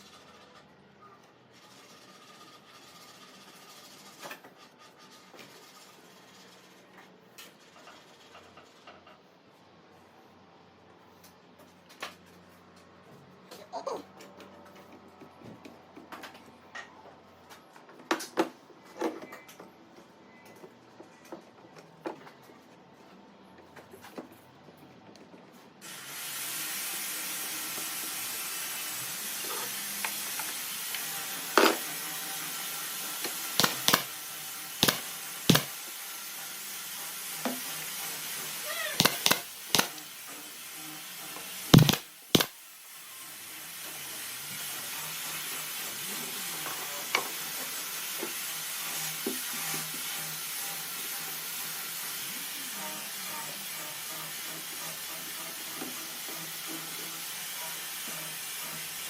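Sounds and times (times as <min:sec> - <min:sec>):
steady hiss: 0:25.8 - 0:37.2, 0:37.9 - 0:43.4
sharp knocks: 0:41.8 - 0:42.5.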